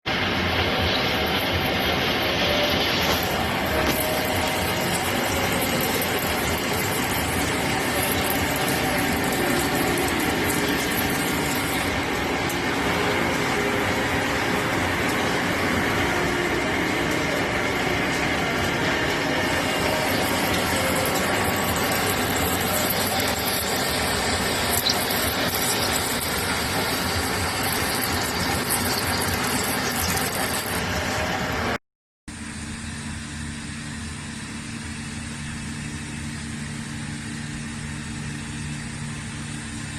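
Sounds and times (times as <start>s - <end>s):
metal lathe cutting: 0.1s - 31.8s
quieter steady machine sound: 0.1s - 39.9s.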